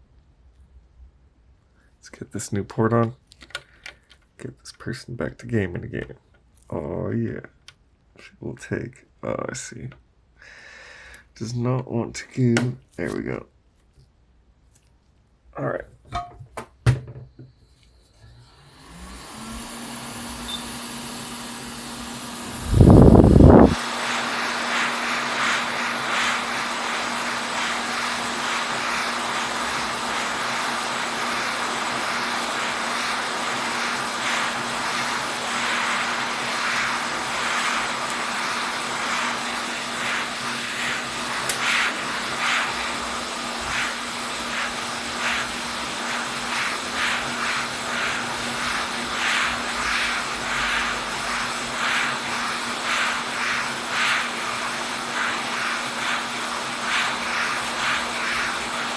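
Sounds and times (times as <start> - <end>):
fan airflow hiss: 18.8 - 58.9.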